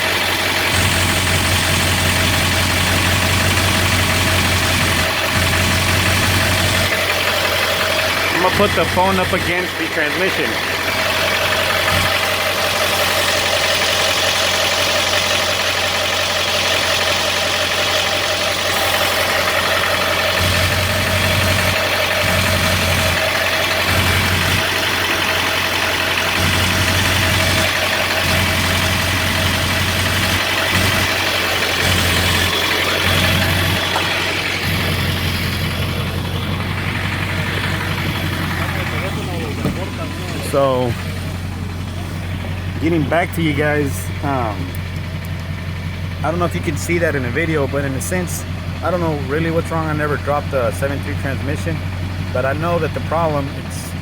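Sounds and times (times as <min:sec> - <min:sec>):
diesel engine idling: 0:00.0 - 0:54.0
low hum: 0:18.1 - 0:51.2.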